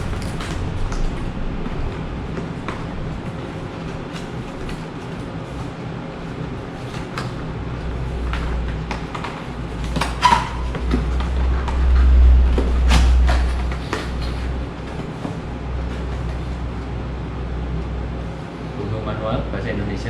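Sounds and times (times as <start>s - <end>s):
packaging clicks and rustles: 0.0s - 11.8s.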